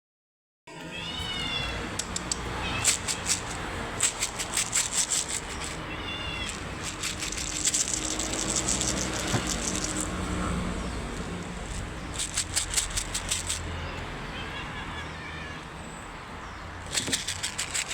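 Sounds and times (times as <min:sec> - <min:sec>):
cat meowing: 0:00.7 - 0:03.6, 0:05.7 - 0:06.8, 0:13.8 - 0:16.1
quick rattling: 0:02.0 - 0:05.8, 0:06.4 - 0:13.6, 0:16.8 - 0:17.9.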